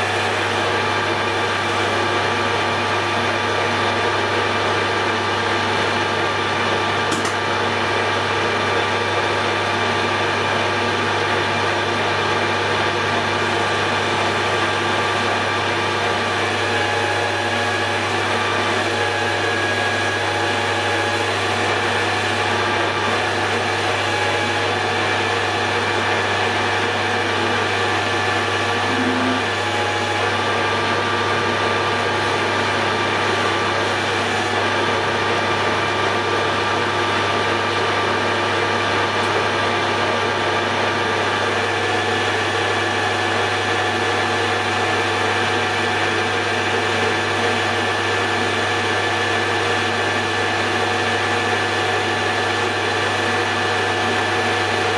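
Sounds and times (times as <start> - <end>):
metal lathe motor humming: 0.0 - 8.3, 9.3 - 36.7, 39.1 - 54.9
lathe tool turning workpiece: 13.4 - 34.6.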